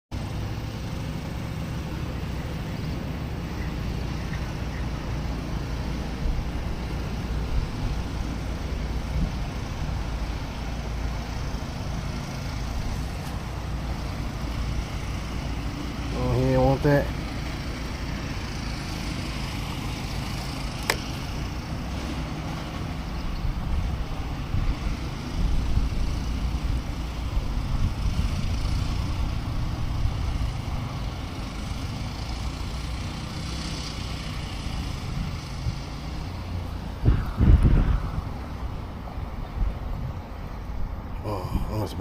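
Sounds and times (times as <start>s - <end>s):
wind buffeting microphone: 2.2s - 15.6s, 23.0s - 30.9s, 34.2s - 42.0s
sharp click: 20.8s - 21.2s.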